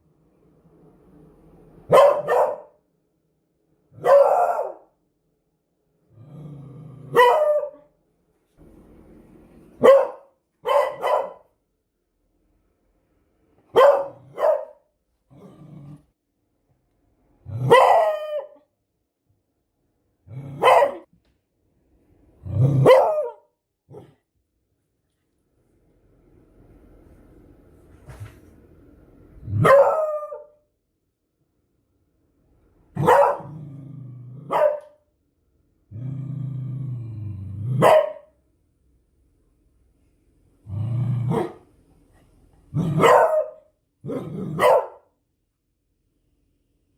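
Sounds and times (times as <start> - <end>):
dog barking and baying: 1.9 - 2.8, 4.0 - 4.9, 7.1 - 7.8, 9.8 - 11.5, 13.7 - 14.8, 17.6 - 18.6, 20.6 - 21.1, 22.8 - 24.1, 29.6 - 30.5, 33.0 - 33.5, 34.5 - 35.0, 37.8 - 38.3, 42.9 - 43.6, 44.5 - 45.1
dog growling: 6.1 - 7.3, 15.2 - 16.2, 20.2 - 21.0, 33.4 - 34.6, 35.9 - 37.8, 40.6 - 41.6, 44.0 - 44.6.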